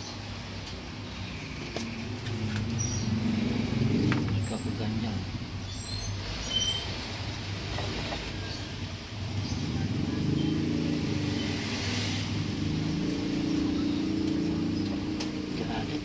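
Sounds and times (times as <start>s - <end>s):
vehicle engine running: 7.4s - 16.0s.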